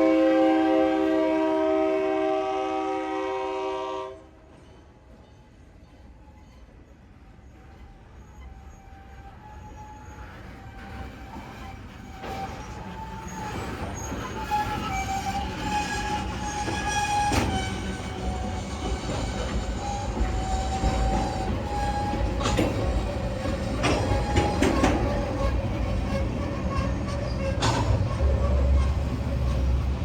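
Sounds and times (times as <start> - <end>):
sharp clanks of train cars: 4.3 - 6.9, 7.5 - 30.0
high squeal of wheels: 5.2 - 29.9
diesel locomotive rumble: 12.1 - 30.0.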